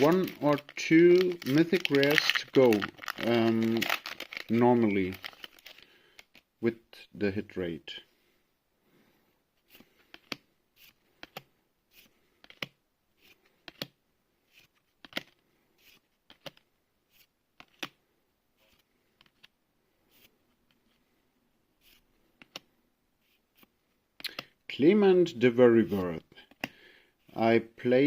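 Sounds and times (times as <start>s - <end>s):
cards being flipped: 0.0s - 6.4s, 9.7s - 18.0s.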